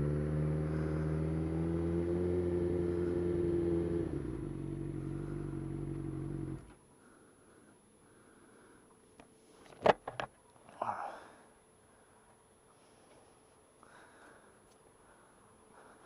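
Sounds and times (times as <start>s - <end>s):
motorcycle engine running: 0.0s - 6.8s.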